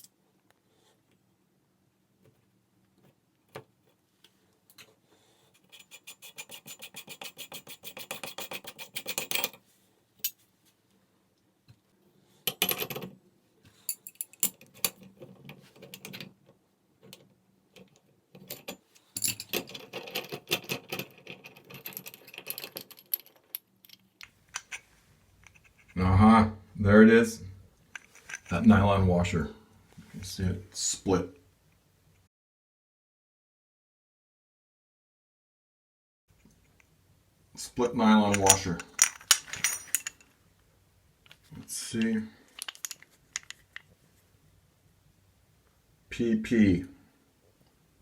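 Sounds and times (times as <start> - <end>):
metallic scrapes and knocks: 38.4 - 40.2.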